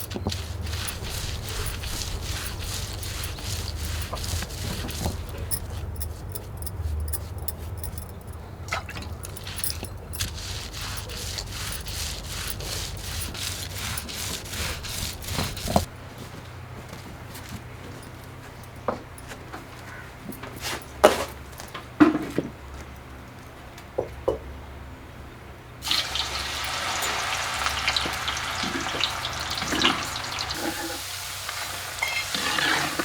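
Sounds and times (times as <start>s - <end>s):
objects being handled: 0.0s - 22.4s.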